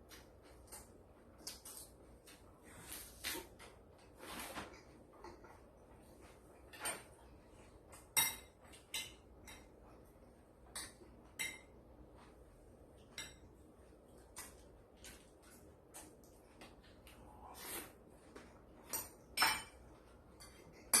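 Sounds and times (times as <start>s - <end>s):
utensils clinking against dish: 8.0s - 9.8s, 10.8s - 11.8s, 18.8s - 21.0s.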